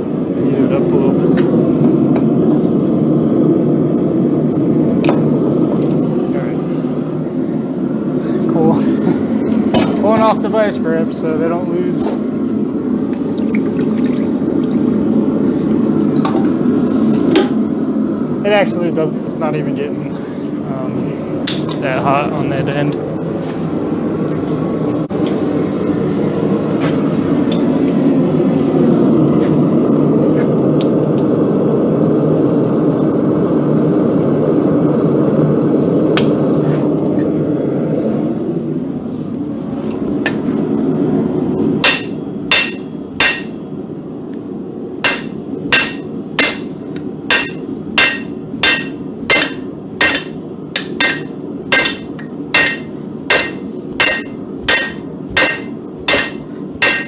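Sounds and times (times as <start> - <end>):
hammer ringing on anvil: 41.8 - 43.6, 45.0 - 57.0.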